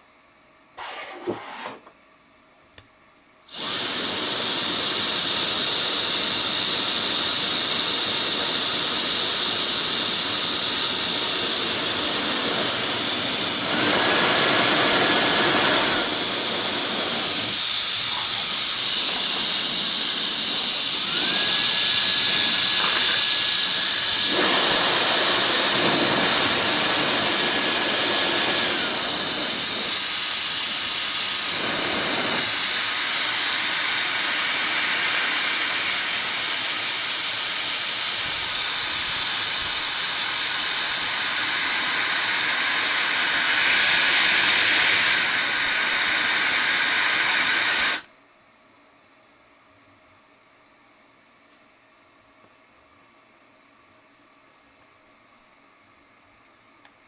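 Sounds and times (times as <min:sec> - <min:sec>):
hair dryer blowing with motor whine: 0:03.5 - 0:48.1.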